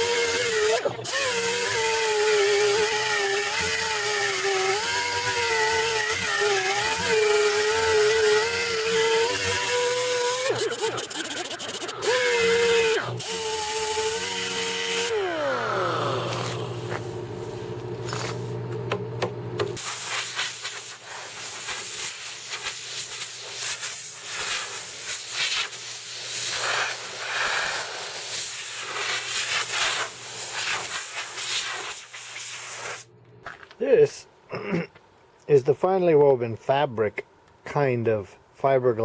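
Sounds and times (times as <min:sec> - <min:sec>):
electric power sander: 0:00.0 - 0:17.2.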